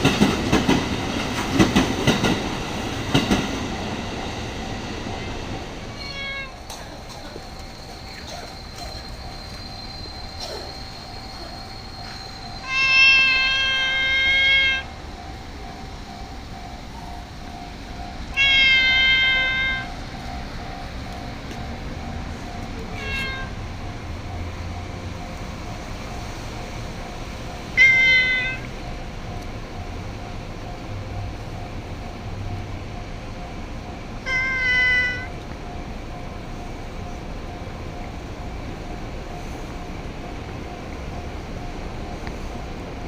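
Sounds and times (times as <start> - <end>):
cat meowing: 22.9 - 23.5.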